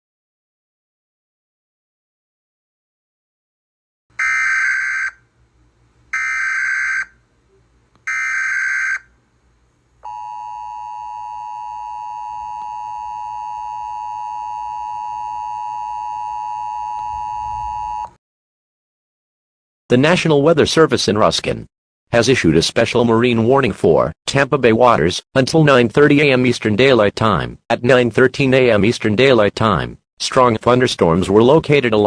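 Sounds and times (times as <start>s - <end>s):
steady attention tone: 10.0s - 18.1s.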